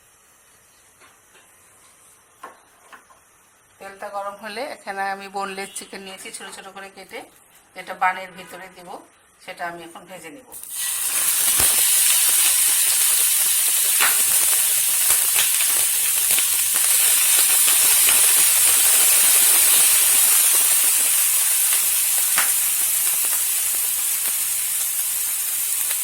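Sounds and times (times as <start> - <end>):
chicken sizzling in hot oil: 10.6 - 26.0.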